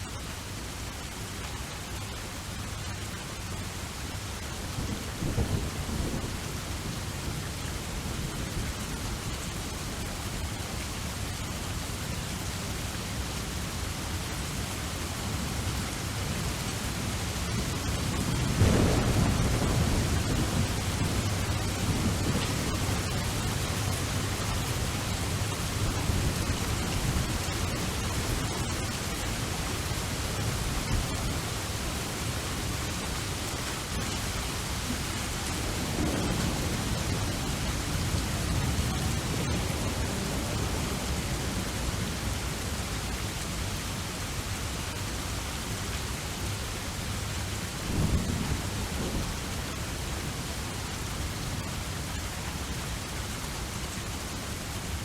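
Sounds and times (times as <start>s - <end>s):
steady rain: 0.0s - 55.0s
rolling thunder: 4.8s - 6.8s, 17.8s - 32.3s, 35.0s - 42.2s, 47.9s - 49.6s.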